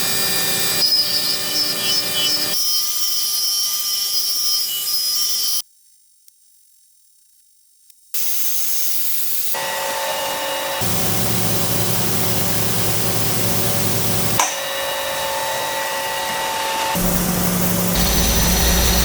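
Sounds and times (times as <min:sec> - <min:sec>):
lathe cutting noise: 0:00.0 - 0:05.5, 0:09.6 - 0:19.0
coolant hissing: 0:10.6 - 0:14.4, 0:16.9 - 0:19.0
spindle whine: 0:10.8 - 0:14.4, 0:15.0 - 0:19.0
low hum: 0:17.0 - 0:19.0.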